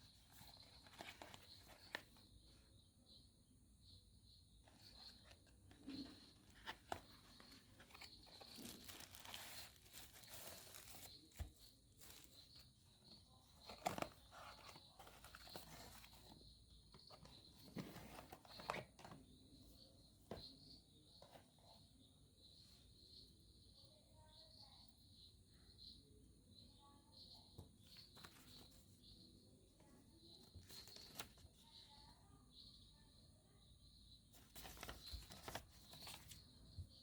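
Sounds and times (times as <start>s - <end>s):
packaging rustling and crinkling: 6.0s - 12.6s.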